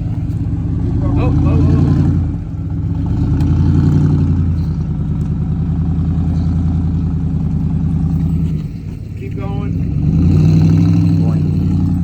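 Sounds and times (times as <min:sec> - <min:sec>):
vehicle engine running at low speed: 0:00.0 - 0:12.0.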